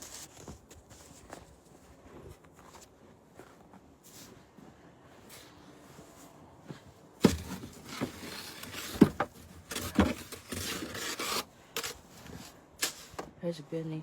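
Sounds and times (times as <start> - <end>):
snow shovel scraping: 7.2 - 13.2.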